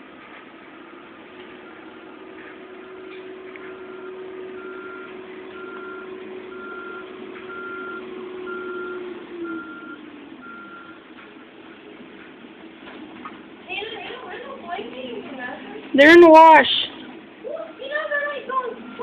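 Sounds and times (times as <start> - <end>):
diesel engine running: 0.0 - 19.0
reversing alarm beeping: 2.8 - 11.1.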